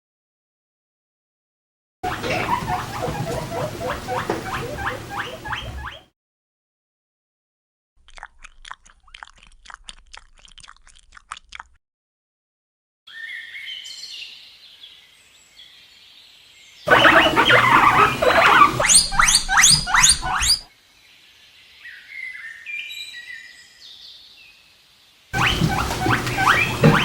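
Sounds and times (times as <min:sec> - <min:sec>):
guinea pig squealing: 0:02.0 - 0:06.1, 0:16.9 - 0:20.7, 0:25.4 - 0:27.0
high short chirping: 0:16.9 - 0:20.7.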